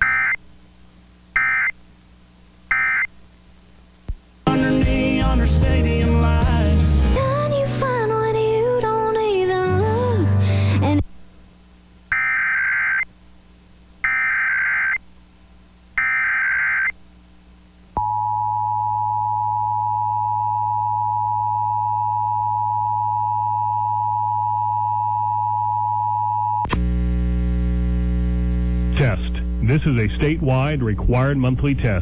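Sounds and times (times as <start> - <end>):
warbling data tone bursts: 0.0 - 0.4, 1.4 - 1.8, 2.7 - 3.1, 12.1 - 13.1, 14.0 - 15.0, 16.0 - 17.0
loud buzzing hum: 26.7 - 31.2.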